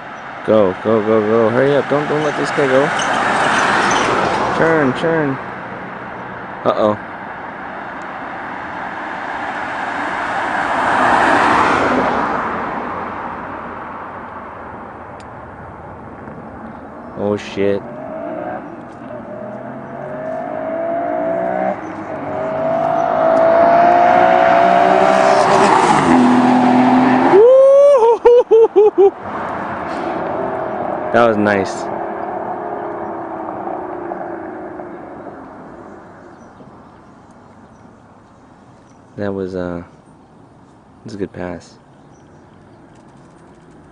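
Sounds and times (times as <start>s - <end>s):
sports car passing at speed: 1.2s - 27.5s, 29.2s - 36.8s
car engine driving off: 16.0s - 27.5s
faint rush: 29.3s - 32.1s.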